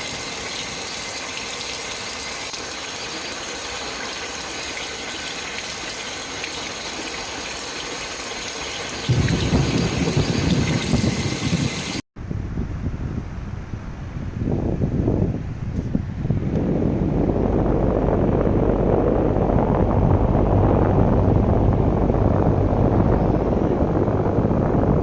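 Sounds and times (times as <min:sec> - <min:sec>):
rain hissing: 0:00.0 - 0:12.0
wind gusting against microphone: 0:09.1 - 0:25.0.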